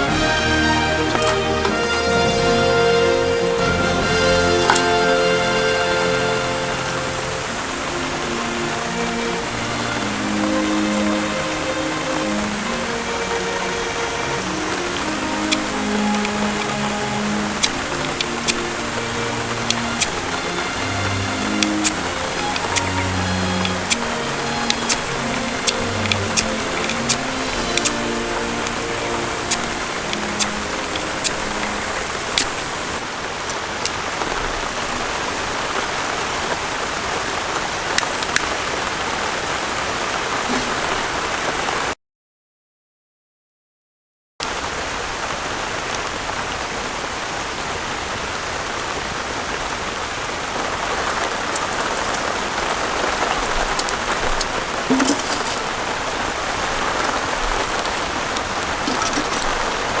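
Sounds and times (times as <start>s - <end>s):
rain falling: 0.0s - 42.0s, 44.4s - 60.0s
sharp drip ticks: 13.2s - 31.8s.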